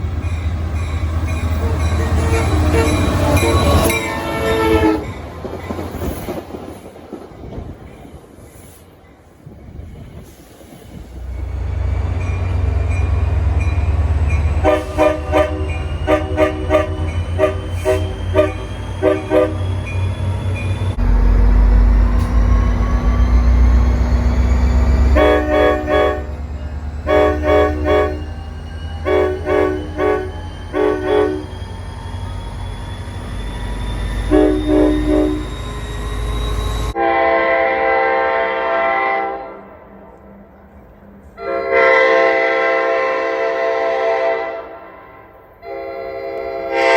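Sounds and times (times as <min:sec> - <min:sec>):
locomotive rumble: 0:00.0 - 0:43.9
train air horn blasts: 0:01.6 - 0:05.1, 0:14.6 - 0:19.8, 0:25.1 - 0:26.4, 0:27.0 - 0:28.3, 0:29.0 - 0:31.5, 0:34.3 - 0:35.5, 0:37.0 - 0:39.8, 0:41.4 - 0:46.9.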